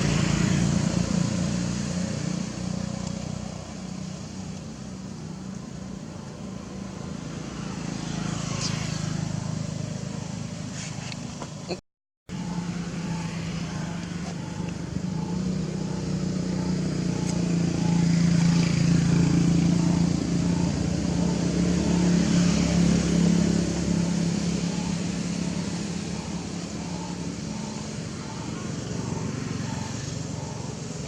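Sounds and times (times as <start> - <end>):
motor engine running: 12.3 - 31.0.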